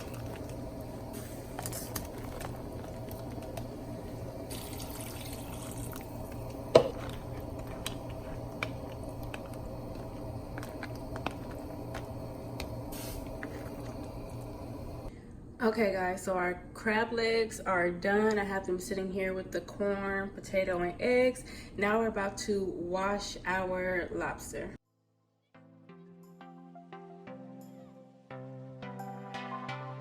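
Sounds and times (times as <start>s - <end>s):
water sloshing and dripping in pot: 0.0s - 15.1s
steady hum: 0.0s - 15.6s
hiss: 12.9s - 14.8s.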